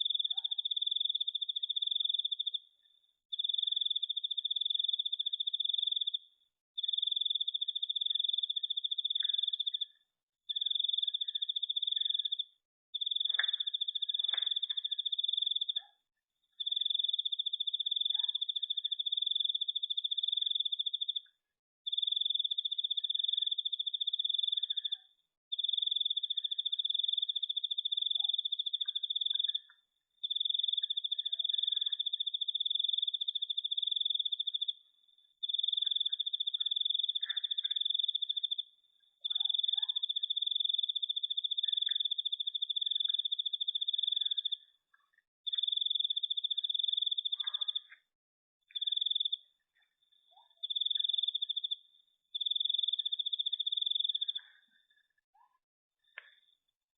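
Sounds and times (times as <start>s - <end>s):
cricket trilling: 10.5s - 15.8s, 21.9s - 34.8s, 35.4s - 44.7s, 45.5s - 48.0s, 48.7s - 49.5s, 50.3s - 54.5s
faint ticks: 13.2s - 15.0s.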